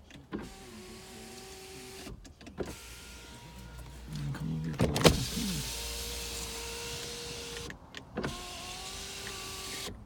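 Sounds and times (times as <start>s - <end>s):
power window motor whining: 0.3s - 9.9s
window motor clunk: 4.7s - 8.4s.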